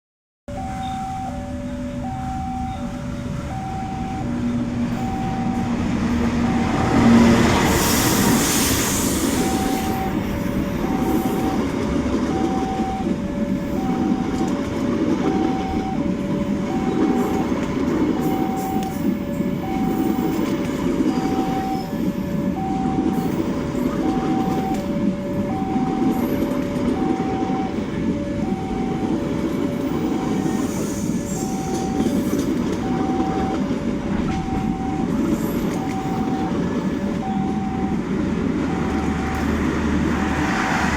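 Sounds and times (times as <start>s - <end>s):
low steady tone: 0.5s - 7.0s
alternating electronic warning beeps: 0.5s - 40.5s
train wheels rumbling on rail: 0.8s - 40.9s
rush of hiss: 7.6s - 9.8s.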